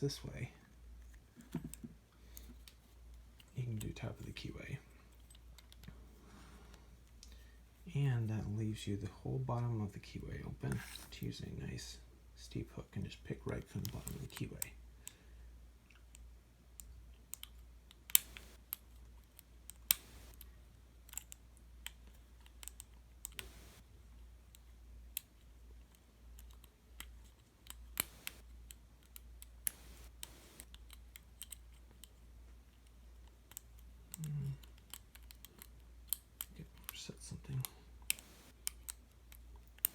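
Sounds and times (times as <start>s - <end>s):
lock pick clicking pins: 24.5s - 37.0s.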